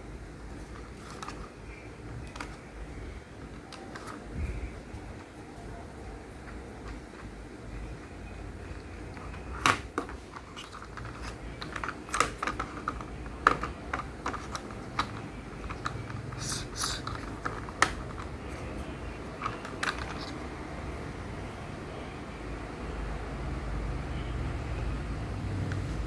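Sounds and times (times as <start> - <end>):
plastic toy pieces clicking: 9.1 - 20.4.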